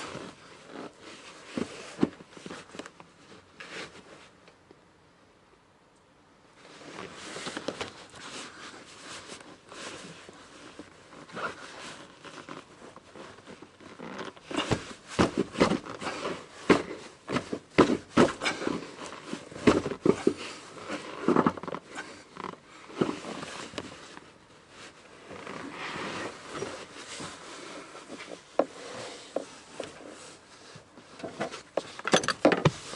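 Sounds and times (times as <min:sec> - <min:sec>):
car seat cushion knocking and rustling: 0:14.5 - 0:20.4.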